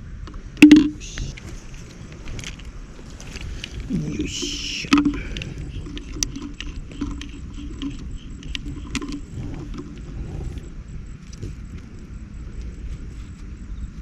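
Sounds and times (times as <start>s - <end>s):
steady low rumble: 0.0s - 14.0s
fishing gear clicking and rattling: 0.6s - 10.7s.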